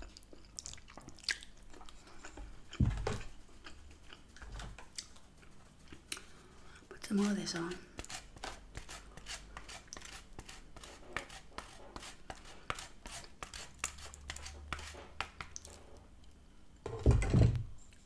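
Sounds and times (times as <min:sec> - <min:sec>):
low thump: 0:02.8 - 0:03.2.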